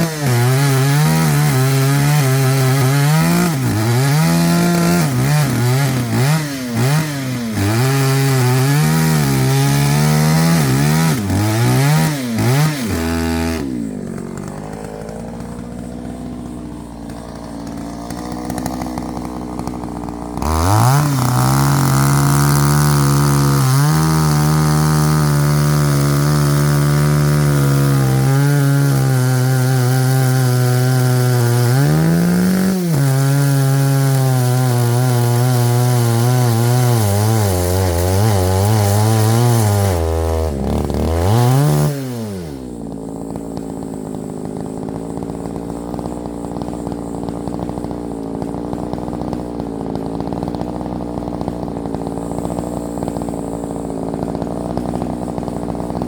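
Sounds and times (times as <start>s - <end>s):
two-stroke chainsaw revving: 0.0s - 56.0s.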